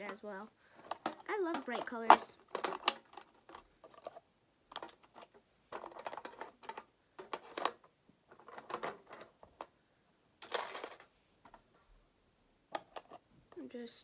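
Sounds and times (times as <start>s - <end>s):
fidget toys clicking and clattering: 0.0s - 9.7s.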